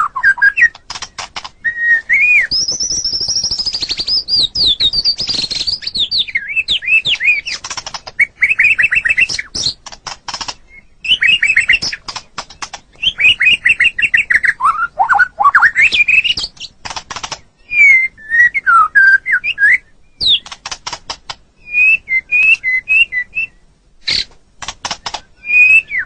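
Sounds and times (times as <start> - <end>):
bird singing whistled song: 0.0 - 0.8, 1.4 - 9.8, 10.6 - 12.0, 13.0 - 16.7, 17.6 - 20.6, 21.6 - 24.3, 25.0 - 26.0
bird clicking chatter: 0.6 - 17.5, 20.2 - 21.5, 24.1 - 25.8.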